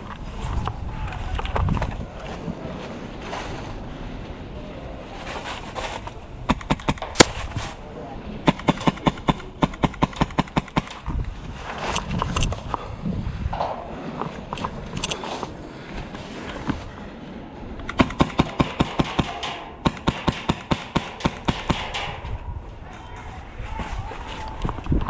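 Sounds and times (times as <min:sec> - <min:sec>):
shuffling movement noise: 0:00.0 - 0:06.5, 0:07.1 - 0:08.1, 0:11.0 - 0:17.8, 0:22.4 - 0:25.0
airsoft rifle bursts: 0:06.5 - 0:07.5.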